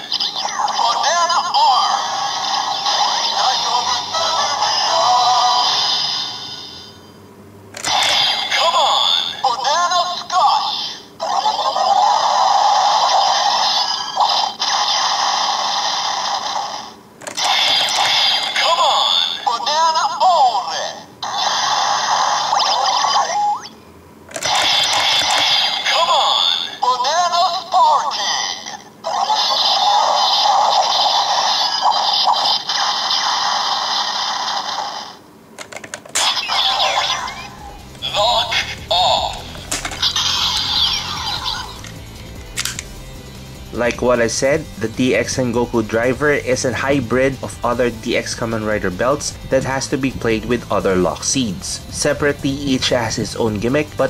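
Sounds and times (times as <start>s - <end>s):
hissy electronic toy sound effect: 0.0s - 7.0s, 7.8s - 42.8s
plastic clicks: 17.2s - 18.1s, 24.3s - 25.5s, 35.6s - 36.3s, 39.4s - 40.1s, 41.8s - 42.9s.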